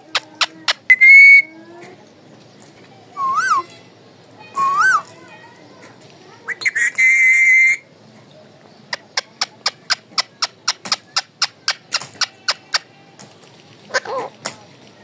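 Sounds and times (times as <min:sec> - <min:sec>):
parakeet shrill whistle call: 0:00.9 - 0:01.5, 0:06.5 - 0:07.8.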